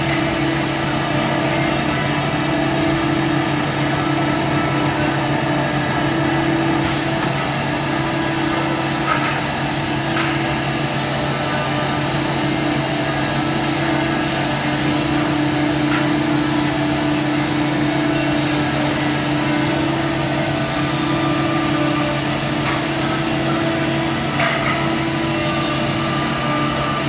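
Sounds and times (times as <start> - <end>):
drilling machine motor hum: 6.8 - 27.0.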